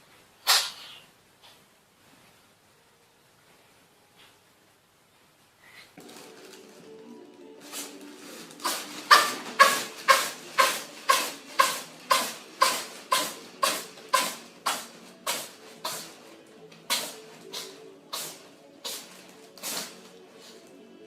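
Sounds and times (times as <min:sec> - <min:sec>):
faint background music: 0:00.0 - 0:21.0
cat sneezing: 0:00.4 - 0:01.1, 0:08.6 - 0:16.3, 0:16.9 - 0:20.2.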